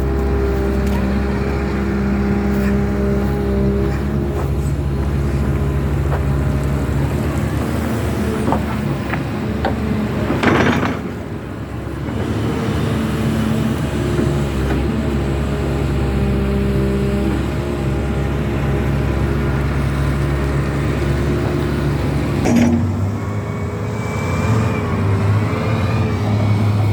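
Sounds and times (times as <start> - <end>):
heavy diesel machinery running: 0.0 - 26.9
short knocks: 8.4 - 11.5, 22.4 - 23.5.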